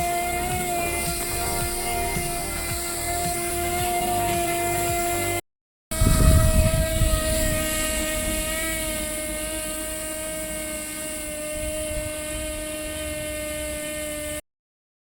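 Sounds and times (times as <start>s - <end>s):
small motor spinning propeller: 0.0s - 14.4s
air rushing on microphone: 6.0s - 10.0s.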